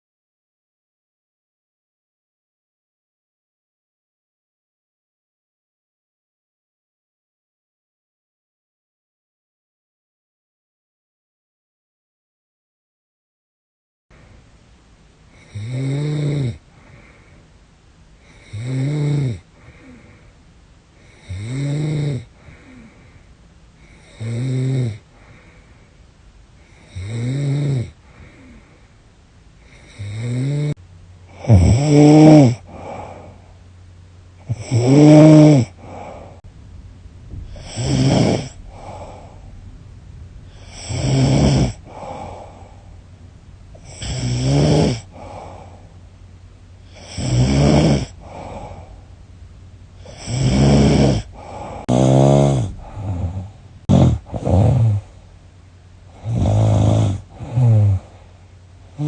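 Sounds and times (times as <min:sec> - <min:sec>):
woman snoring loudly: 0:15.4 - 0:16.6, 0:18.3 - 0:20.0, 0:21.1 - 0:22.8, 0:24.0 - 0:25.0, 0:26.8 - 0:28.6, 0:29.7 - 0:33.2, 0:34.4 - 0:36.1, 0:37.5 - 0:39.2, 0:40.5 - 0:42.6, 0:43.8 - 0:45.7, 0:46.8 - 0:48.8, 0:50.0 - 0:55.1, 0:56.1 - 0:58.1.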